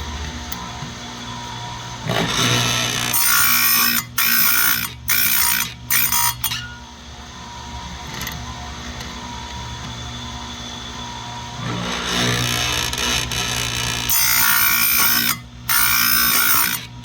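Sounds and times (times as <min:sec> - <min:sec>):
steady motor hum: 0:00.0 - 0:17.0
grinder wheel grinding chain: 0:02.1 - 0:06.8, 0:11.9 - 0:17.0.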